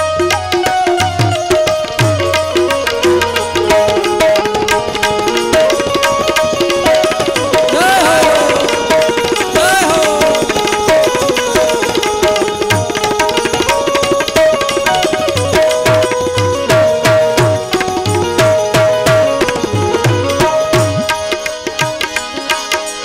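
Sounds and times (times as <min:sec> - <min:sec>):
fast hand-drum rhythm: 0:00.0 - 0:23.0
harmonium melody: 0:00.0 - 0:23.0
wavering high notes: 0:07.5 - 0:10.8.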